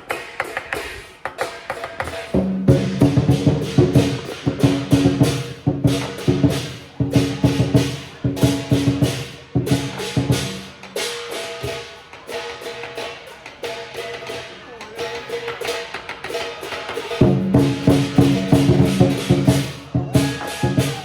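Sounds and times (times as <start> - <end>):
wood block percussion strikes: 0.0 - 21.0.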